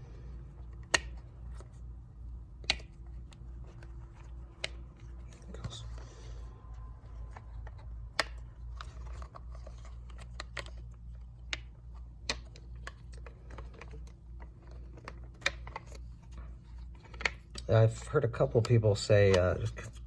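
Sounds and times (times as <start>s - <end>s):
plastic parts clicking and rattling: 7.0s - 20.0s.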